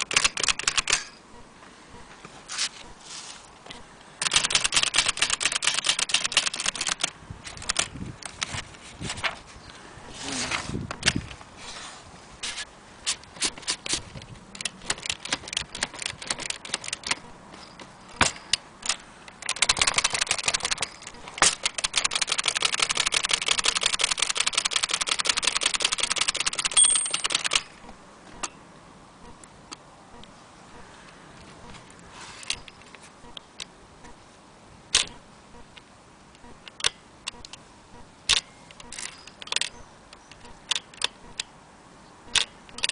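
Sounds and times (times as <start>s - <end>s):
typewriter keystrokes: 0.0s - 1.1s, 4.2s - 7.9s, 14.6s - 17.2s, 18.2s - 27.7s, 42.3s - 42.9s
short high ring: 26.8s - 27.3s.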